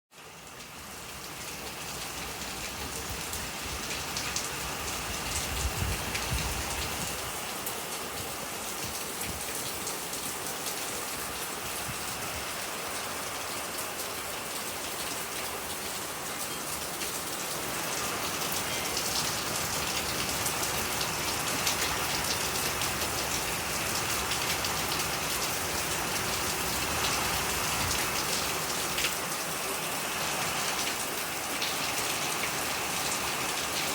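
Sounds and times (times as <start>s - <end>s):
steady rain: 0.1s - 33.9s
wind gusts: 2.4s - 16.2s.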